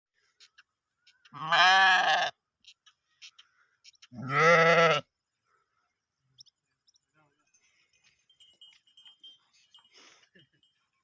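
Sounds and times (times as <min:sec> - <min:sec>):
sheep bleating: 0:01.3 - 0:02.4, 0:04.1 - 0:05.1.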